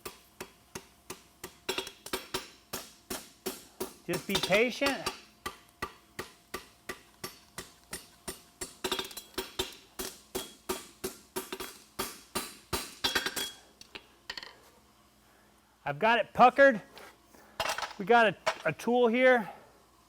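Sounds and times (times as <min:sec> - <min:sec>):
hammer striking steel on anvil: 0:00.0 - 0:13.6.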